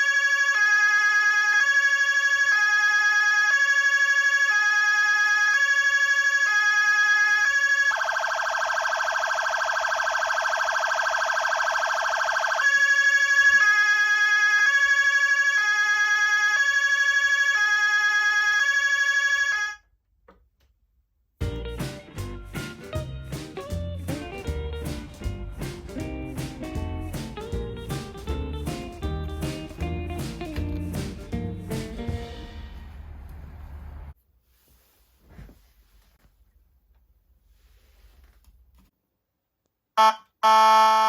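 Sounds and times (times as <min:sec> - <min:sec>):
two-pitch electronic siren: 0:00.0 - 0:19.8, 0:40.0 - 0:41.0
buzzy horn-like siren tone: 0:12.1 - 0:19.8, 0:40.0 - 0:41.0.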